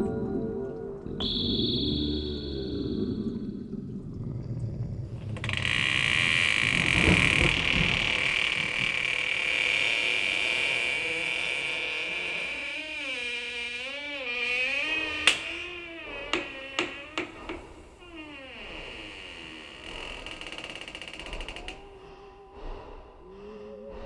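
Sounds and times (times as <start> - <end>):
wavering wailing tone: 0.0 - 3.7.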